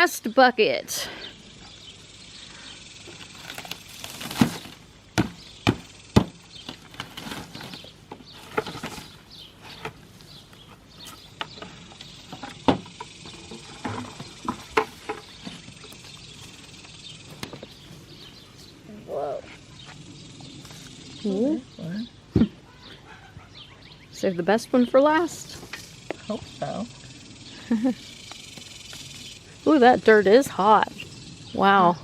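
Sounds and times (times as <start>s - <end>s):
dirt scraping and rustling: 3.1s - 5.5s, 6.5s - 21.3s
sharp knocks in dry soil: 4.2s - 9.0s.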